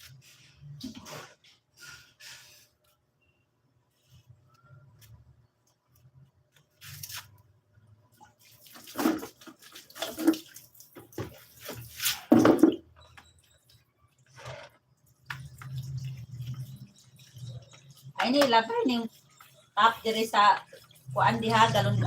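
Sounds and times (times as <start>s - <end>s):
water splashing and pouring: 8.2s - 12.9s, 14.3s - 18.2s.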